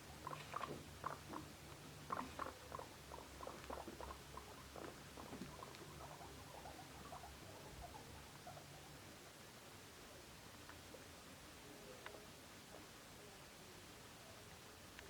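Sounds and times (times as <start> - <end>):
guinea pigs squeaking: 0.0 - 9.0.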